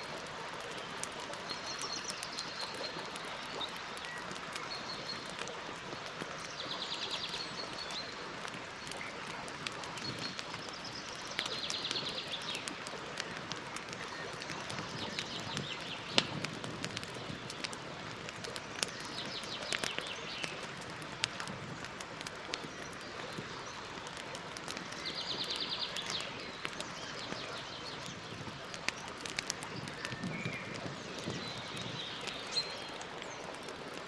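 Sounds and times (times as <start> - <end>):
campfire crackling and popping: 0.0 - 34.0.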